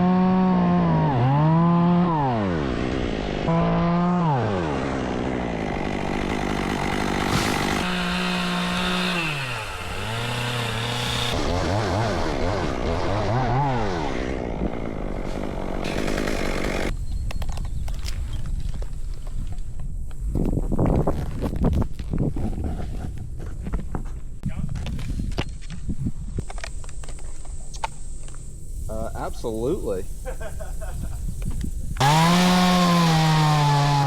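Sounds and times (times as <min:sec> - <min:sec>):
chainsaw cutting wood: 0:00.0 - 0:17.0, 0:32.0 - 0:34.0.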